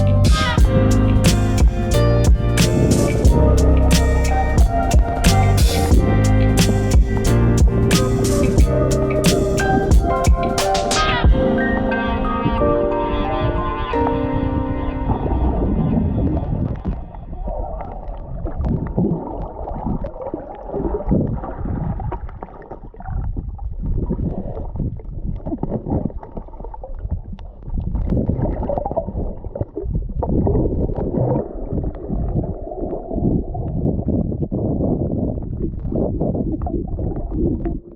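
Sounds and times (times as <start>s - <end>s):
underwater gurgling water: 8.5s - 37.9s.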